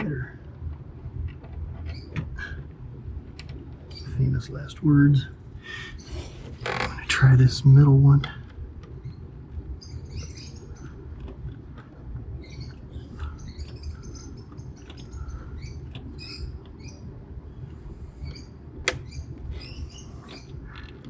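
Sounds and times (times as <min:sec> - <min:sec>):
low steady rumble: 0:00.0 - 0:21.0
parakeets chirping: 0:09.8 - 0:11.1, 0:12.4 - 0:17.1, 0:18.1 - 0:21.0.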